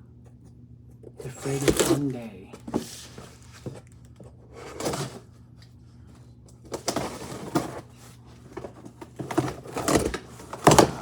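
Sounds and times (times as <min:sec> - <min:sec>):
low steady hum: 0:00.0 - 0:11.0
cardboard box rustling and knocking: 0:01.3 - 0:03.8.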